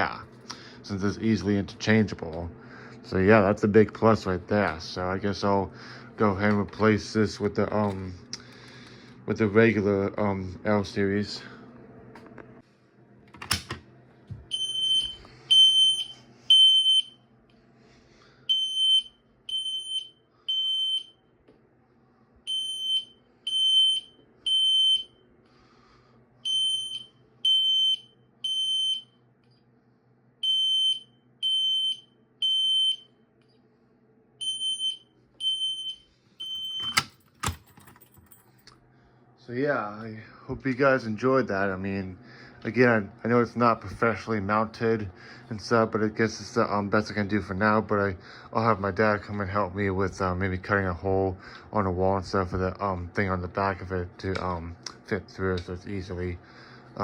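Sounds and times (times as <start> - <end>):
fire alarm horn beeping: 14.5 - 17.2, 18.5 - 21.2, 22.5 - 25.2, 26.4 - 29.2, 30.4 - 33.1, 34.4 - 37.1.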